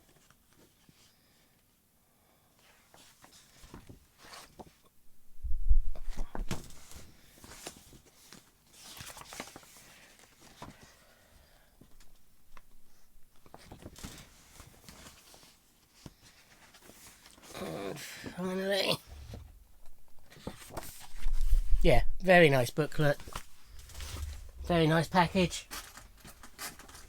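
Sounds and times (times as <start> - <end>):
paper pages rustling: 6.1 - 10.9, 13.4 - 17.5, 19.1 - 21.8, 22.8 - 27.0.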